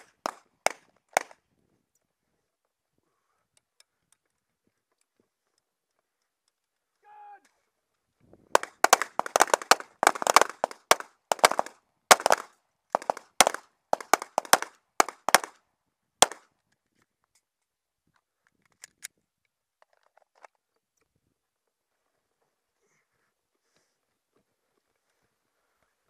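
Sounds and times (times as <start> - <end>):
pistol shots: 8.6 - 15.5.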